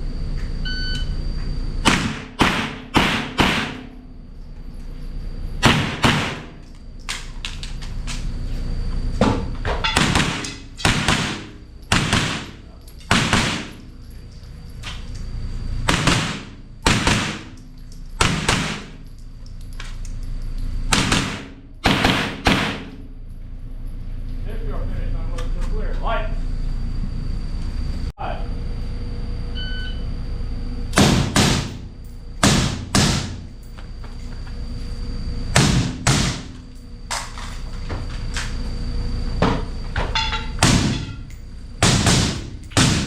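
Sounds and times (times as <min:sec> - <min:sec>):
rifle shots: 0:01.8 - 0:03.9, 0:05.6 - 0:06.6, 0:10.0 - 0:13.8, 0:15.9 - 0:17.5, 0:18.2 - 0:19.0, 0:20.9 - 0:23.0.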